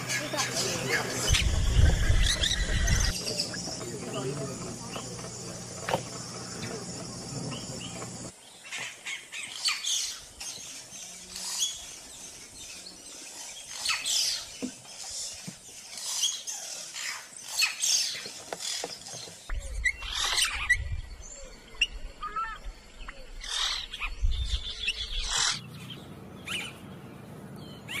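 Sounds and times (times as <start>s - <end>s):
low rumble: 1.2s - 4.0s.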